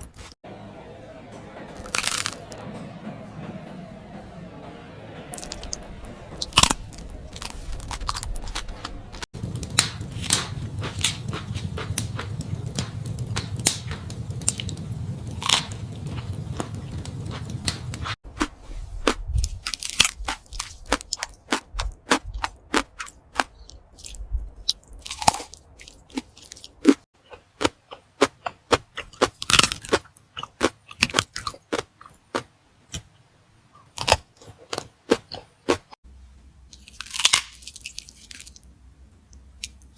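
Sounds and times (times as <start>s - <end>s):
low hum: 0.0s - 22.0s
person chewing crunchy food: 6.4s - 32.5s, 33.8s - 36.0s, 36.8s - 38.7s.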